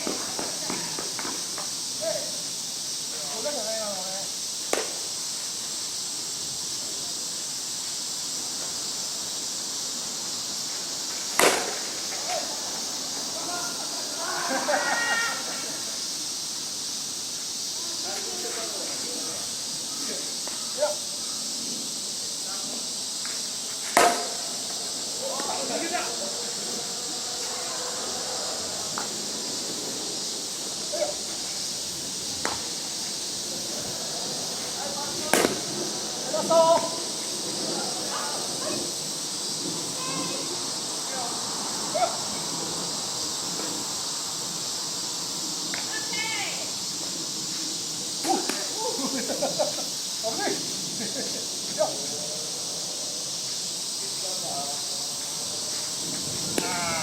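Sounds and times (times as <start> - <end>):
bats hitting balls: 0.0 - 1.8, 4.6 - 5.3, 10.7 - 14.3, 23.2 - 37.3, 48.2 - 48.8, 56.0 - 57.0
steady high hiss: 0.0 - 57.0
softball bat knocks: 23.9 - 24.4, 35.3 - 35.7.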